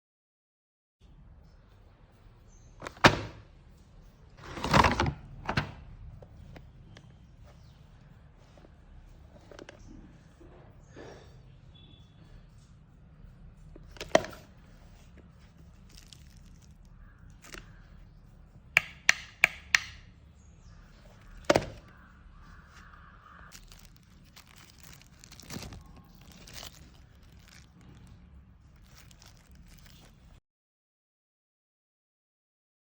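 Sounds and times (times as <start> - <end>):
plastic snap: 18.8 - 20.1
quick clicks: 18.8 - 20.1
soft rustling: 21.1 - 30.4.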